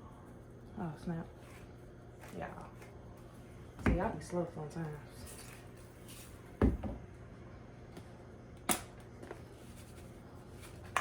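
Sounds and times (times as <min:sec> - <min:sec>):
low steady hum: 0:00.0 - 0:11.0
kitchen items knocking on counter: 0:06.6 - 0:07.0.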